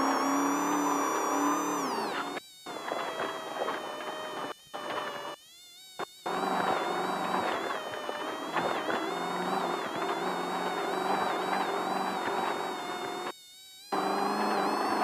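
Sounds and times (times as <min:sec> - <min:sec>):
race car engine whine: 0:06.3 - 0:13.3, 0:13.9 - 0:15.0.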